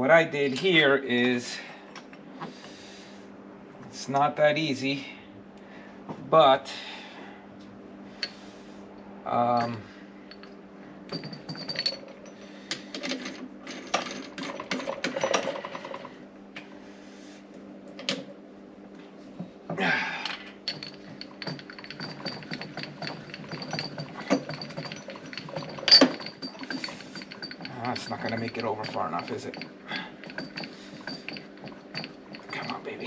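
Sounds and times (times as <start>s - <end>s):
steady electrical hum: 0.0s - 33.0s
metal hinge parts clinking: 9.5s - 10.5s, 20.4s - 33.0s.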